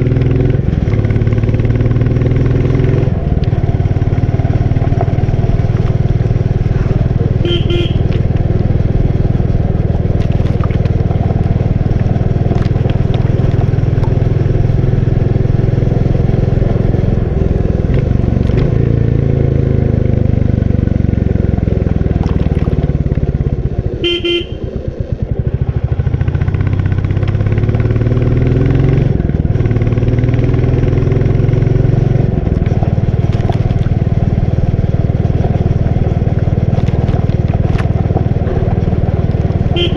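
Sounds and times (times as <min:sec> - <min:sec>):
motorcycle engine running: 0:00.0 - 0:39.9
horn honks: 0:07.3 - 0:08.3, 0:24.0 - 0:24.9, 0:39.6 - 0:39.9.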